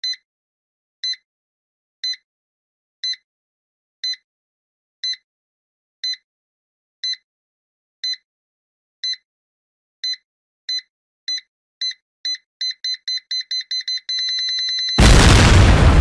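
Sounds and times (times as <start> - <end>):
loud explosion: 15.0 - 16.0.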